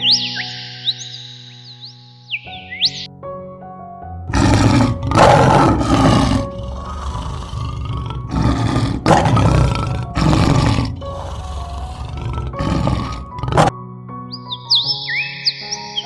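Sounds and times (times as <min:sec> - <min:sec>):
background music: 0:00.0 - 0:16.0
large animal roaring: 0:04.3 - 0:13.7.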